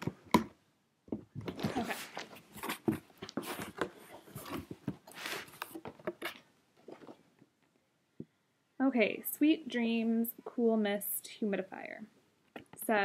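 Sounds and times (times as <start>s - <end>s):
cardboard box being handled: 1.4s - 7.2s.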